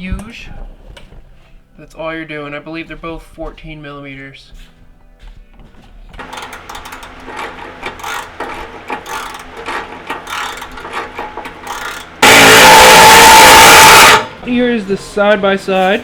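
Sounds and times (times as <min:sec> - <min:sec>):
loud rush of noise with whine: 0:12.2 - 0:14.3.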